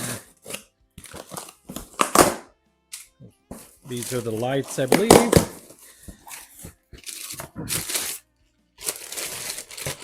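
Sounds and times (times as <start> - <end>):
packaging rustling and crinkling: 8.8 - 10.0.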